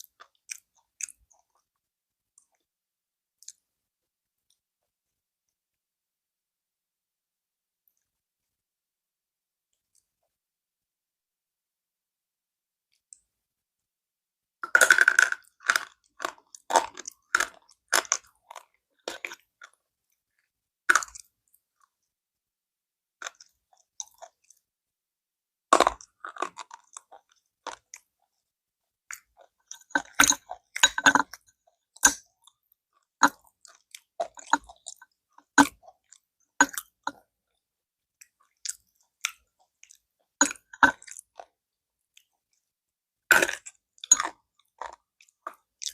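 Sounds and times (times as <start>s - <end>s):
gritty chewing crunches: 14.7s - 19.8s, 25.8s - 28.0s, 43.3s - 45.9s
crunching bite: 43.3s - 45.0s.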